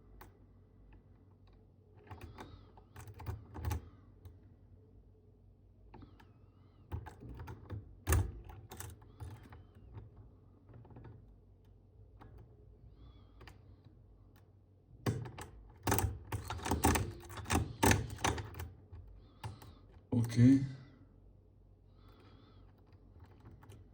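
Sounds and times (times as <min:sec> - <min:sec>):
lock pick clicking in lock: 0:15.1 - 0:18.7.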